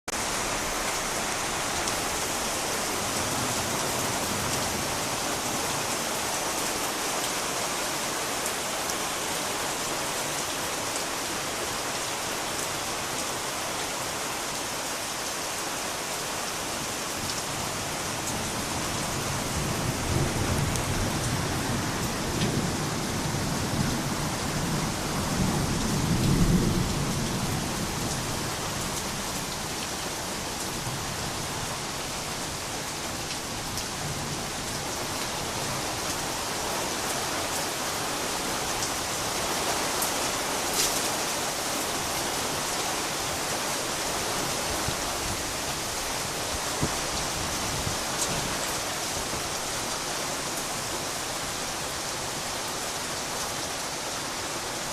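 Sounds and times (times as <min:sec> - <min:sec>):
steady rain: 0:00.1 - 0:54.9.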